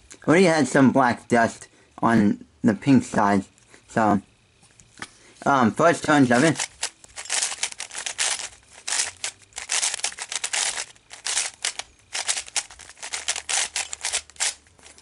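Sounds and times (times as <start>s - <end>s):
plastic puzzle cube clicking: 6.4s - 15.0s.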